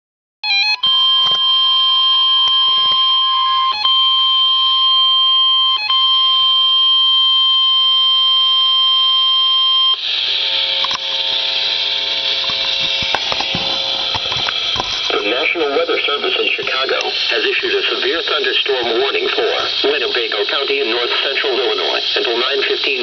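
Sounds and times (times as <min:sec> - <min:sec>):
high-pitched alarm tone: 0:00.4 - 0:23.0
hissy noise: 0:10.2 - 0:23.0.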